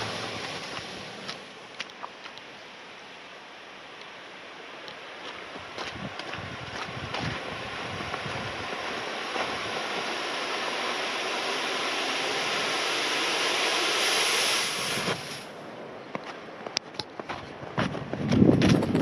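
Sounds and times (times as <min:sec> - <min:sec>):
snow sliding off roof: 0:07.4 - 0:15.6.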